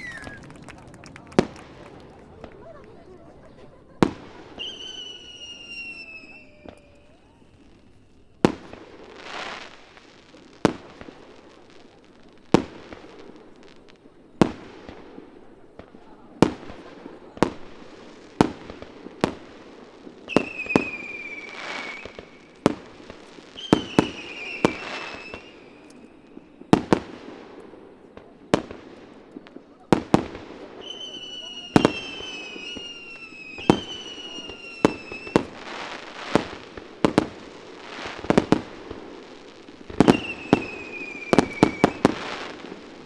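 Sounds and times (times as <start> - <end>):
high falling whistles: 0.0 - 0.7, 4.6 - 8.3, 40.0 - 42.1
firework crackling: 0.0 - 43.0
firework shells booming: 0.0 - 43.0.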